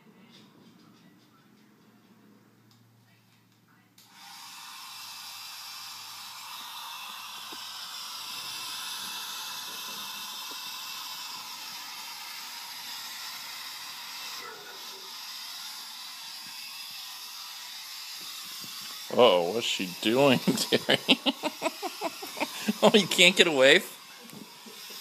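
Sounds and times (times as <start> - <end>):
hairdryer through phone speaker: 4.0 - 25.0.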